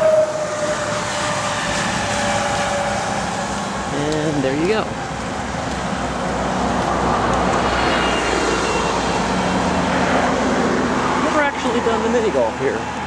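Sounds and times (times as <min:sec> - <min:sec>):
traffic rushing past: 0:00.0 - 0:13.0.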